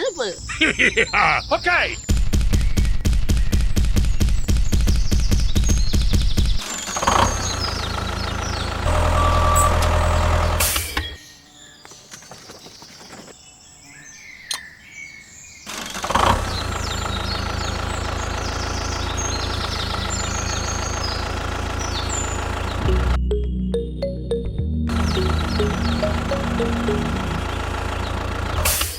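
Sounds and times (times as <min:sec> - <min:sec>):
birds chirping: 0:00.0 - 0:28.9
motor running: 0:24.9 - 0:28.9.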